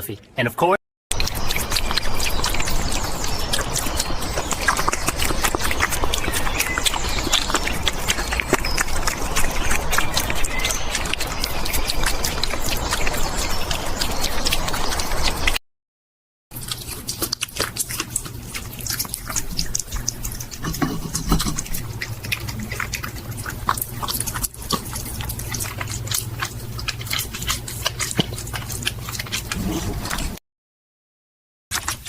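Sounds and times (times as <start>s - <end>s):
hedgehog chewing food: 1.1s - 15.6s, 16.5s - 30.4s, 31.7s - 32.0s
low steady hum: 16.6s - 30.4s.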